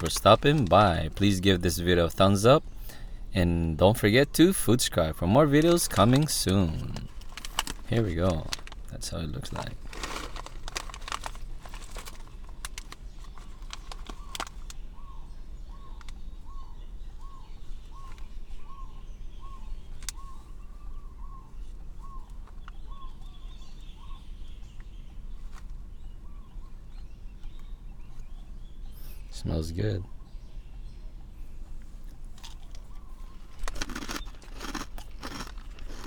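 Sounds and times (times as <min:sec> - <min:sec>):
plastic snack packet crinkling: 0:00.0 - 0:02.4, 0:04.4 - 0:14.8, 0:32.4 - 0:36.0
bird chirping: 0:00.0 - 0:09.8, 0:11.9 - 0:36.0
steady low hum: 0:00.0 - 0:36.0.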